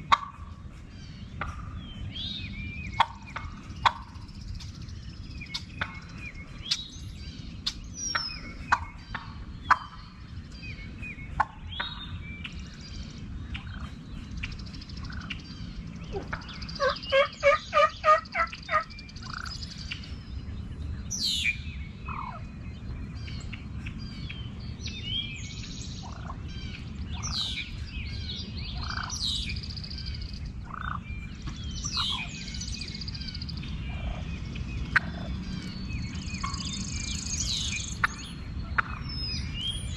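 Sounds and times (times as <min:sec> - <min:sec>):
songbirds chirping: 0:00.0 - 0:39.9
turkey gobbling: 0:00.1 - 0:00.4, 0:03.0 - 0:04.1, 0:08.1 - 0:10.0, 0:16.1 - 0:19.5, 0:28.8 - 0:29.2, 0:30.7 - 0:31.0, 0:34.9 - 0:35.3, 0:38.8 - 0:39.0.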